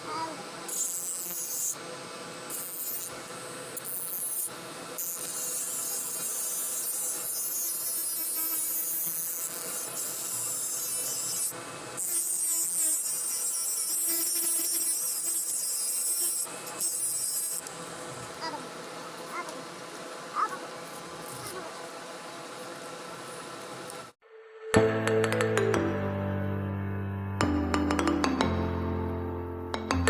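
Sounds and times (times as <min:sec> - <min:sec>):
tool rasping and scraping: 0:03.8 - 0:17.8.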